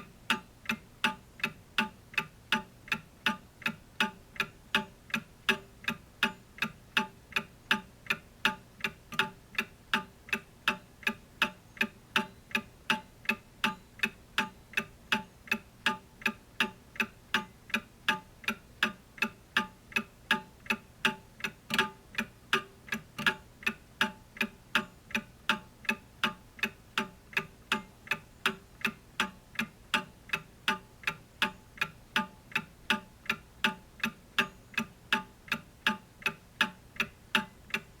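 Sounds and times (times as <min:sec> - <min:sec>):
clock ticking: 0:00.0 - 0:38.0.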